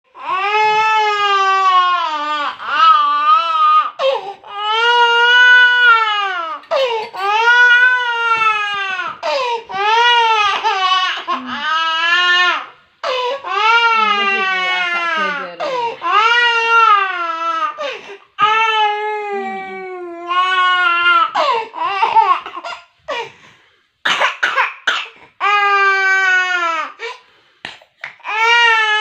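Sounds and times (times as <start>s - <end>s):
small child crying: 0.2s - 17.8s, 18.4s - 22.7s.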